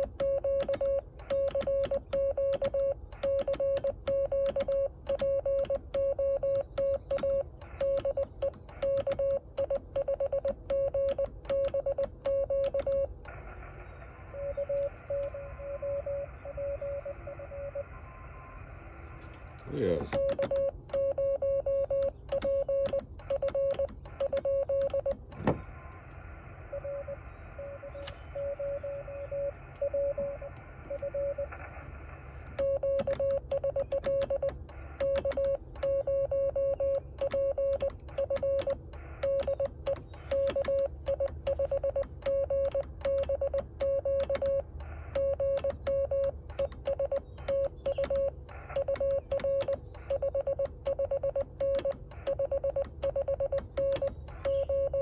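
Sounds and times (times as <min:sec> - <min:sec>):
morse code tone: 0:00.0 - 0:13.2, 0:14.3 - 0:18.0, 0:19.9 - 0:25.9, 0:26.7 - 0:31.6, 0:32.5 - 0:55.0
click: 0:00.0 - 0:13.4, 0:21.9 - 0:26.0, 0:32.6 - 0:55.0.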